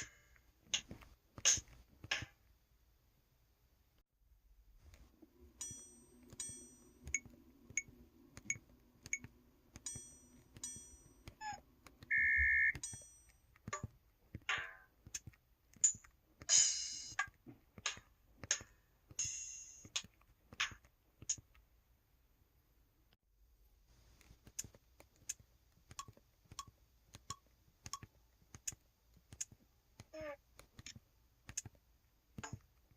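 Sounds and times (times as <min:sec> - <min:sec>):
short steady beep: 0:12.1 - 0:12.8
drum-like hits and clicks: 0:15.8 - 0:21.4.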